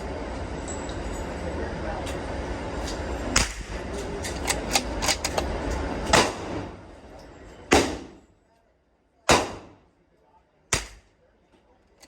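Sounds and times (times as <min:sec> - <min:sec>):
steady low rumble: 0:00.0 - 0:08.6
rifle shots cracking: 0:06.1 - 0:06.7, 0:07.7 - 0:08.2, 0:09.3 - 0:09.8, 0:10.8 - 0:11.1.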